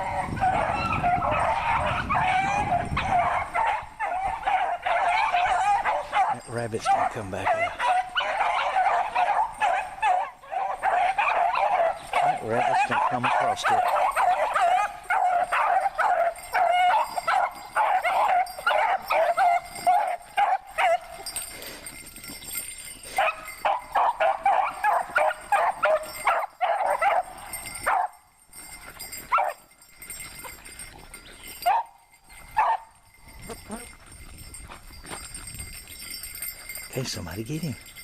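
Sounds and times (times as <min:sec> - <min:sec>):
dogs baying: 0:00.0 - 0:37.8.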